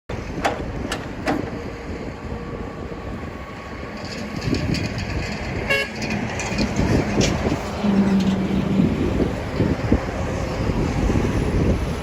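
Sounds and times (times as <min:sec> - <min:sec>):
diesel engine rumbling: 0:00.1 - 0:12.0.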